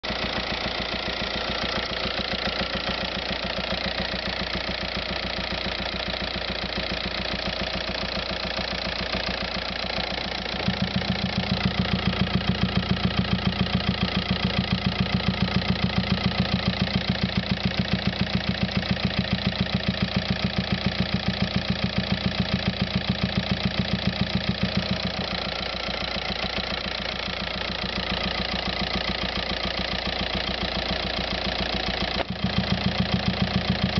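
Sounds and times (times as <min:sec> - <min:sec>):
diesel engine idling: 0:00.0 - 0:33.9
low rapidly pulsing throb: 0:10.6 - 0:21.3.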